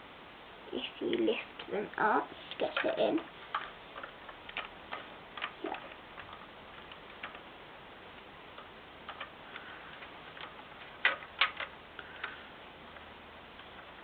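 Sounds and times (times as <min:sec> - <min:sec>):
plastic pieces clicking together: 0:02.5 - 0:07.5, 0:08.5 - 0:14.0.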